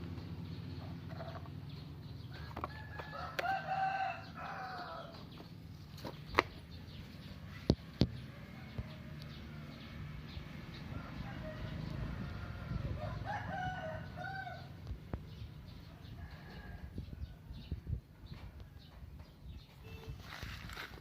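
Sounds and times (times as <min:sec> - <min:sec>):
rooster crowing: 0:02.4 - 0:05.2, 0:10.9 - 0:14.7.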